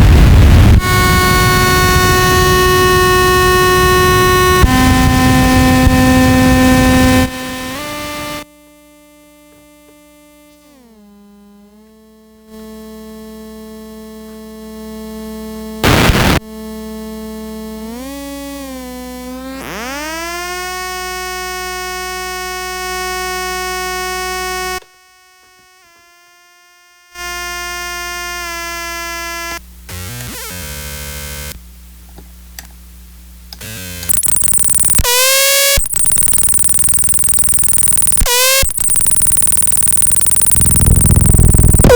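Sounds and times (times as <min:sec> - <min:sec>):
loud crackle: 0:34.1 - 0:35.0, 0:35.8 - 0:41.9
buzzy electronic drones: 0:34.1 - 0:41.9.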